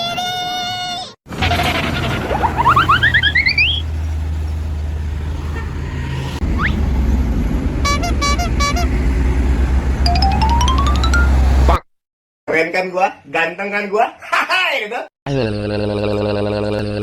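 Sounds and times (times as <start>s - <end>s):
vehicle engine rumble: 1.3s - 11.8s
rising whistle-like tones: 2.4s - 3.8s
multi-tone bus horn: 7.8s - 9.7s.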